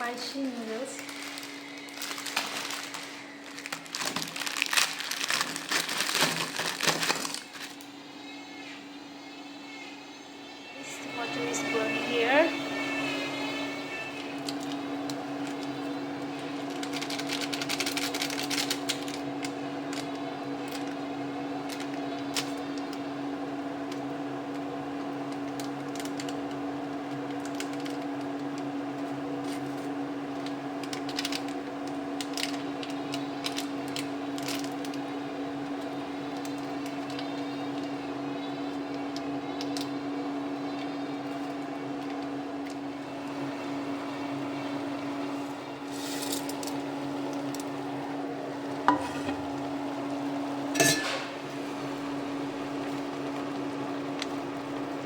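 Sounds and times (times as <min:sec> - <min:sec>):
pot of water boiling: 0:00.0 - 0:55.0
clicks and crackles: 0:01.0 - 0:07.9, 0:16.5 - 0:21.0, 0:23.9 - 0:40.0.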